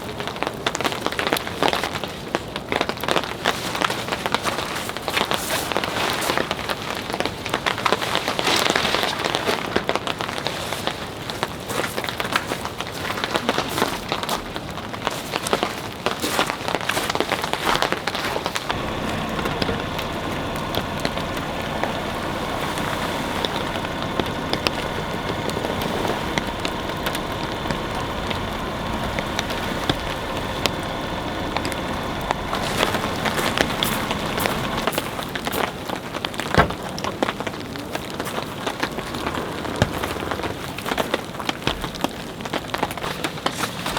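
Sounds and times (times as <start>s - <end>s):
steady rain: 15.2s - 43.9s
close raindrop taps: 18.6s - 35.2s.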